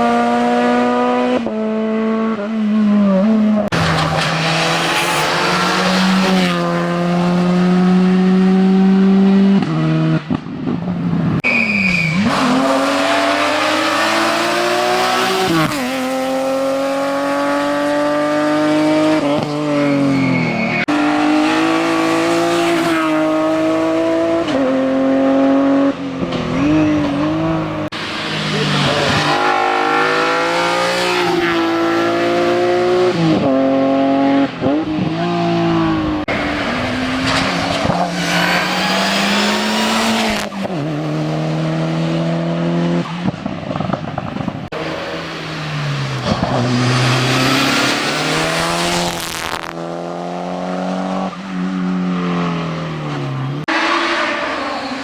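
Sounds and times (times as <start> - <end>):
racing car engine revving: 20.8 - 55.0.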